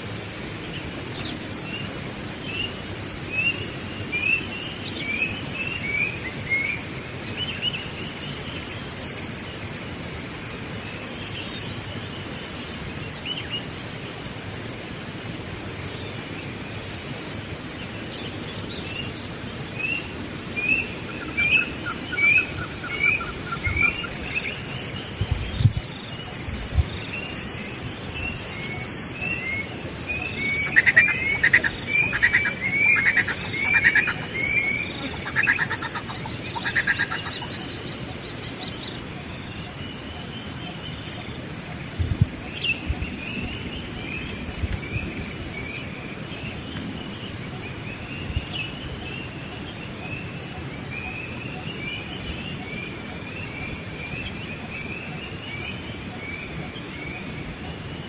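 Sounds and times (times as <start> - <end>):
high insect drone: 0.0 - 58.0
birds chirping: 17.8 - 57.7.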